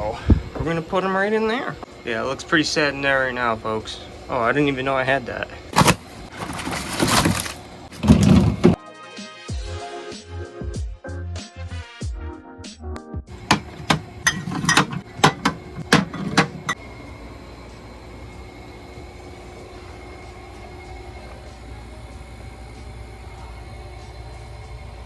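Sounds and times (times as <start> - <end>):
fridge low hum: 0.0 - 8.8, 13.3 - 25.0
bottles and cans clinking: 5.8 - 8.8, 13.4 - 16.8.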